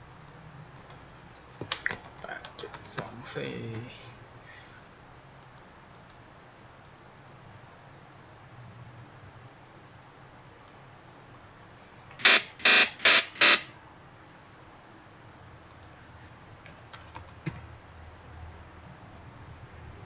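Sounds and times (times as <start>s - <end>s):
buzzy synthesizer zaps: 12.2s - 13.7s.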